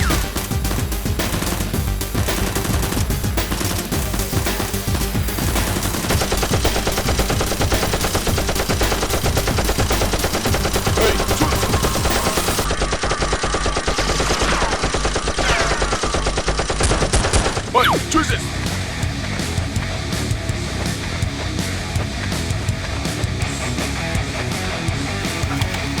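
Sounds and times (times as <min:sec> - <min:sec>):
automatic gunfire: 0:00.0 - 0:17.7.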